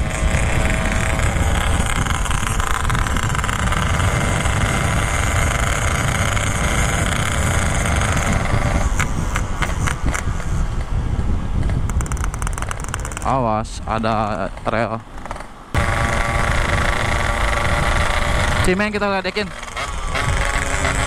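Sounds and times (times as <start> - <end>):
motorcycle engine: 0.0 - 21.0
wind and road noise: 0.0 - 21.0
sharp clicks: 11.6 - 13.3.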